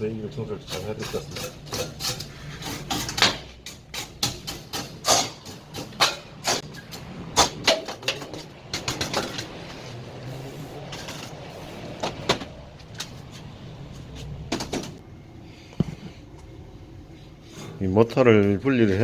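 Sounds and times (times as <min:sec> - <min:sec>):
tools knocking and scraping: 0:00.7 - 0:09.8.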